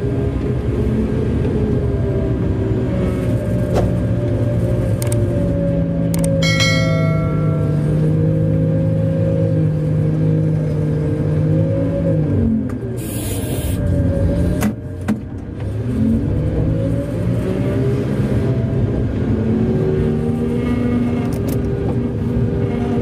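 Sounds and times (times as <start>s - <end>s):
large diesel engine running: 0.0s - 23.0s
air hiss: 13.0s - 13.8s.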